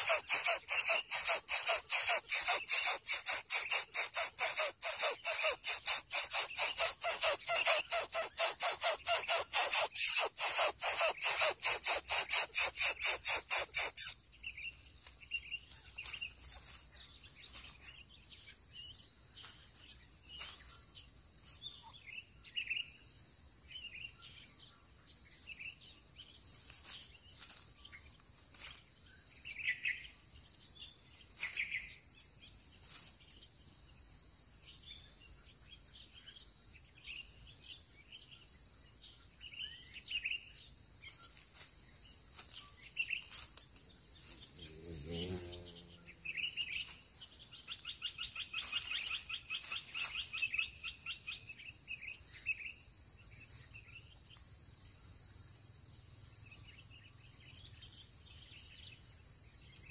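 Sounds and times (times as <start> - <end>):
chick rasping hiss: 0.0 - 14.2
high insect drone: 0.0 - 18.8, 40.5 - 59.9
faint bird chirps: 0.0 - 23.0.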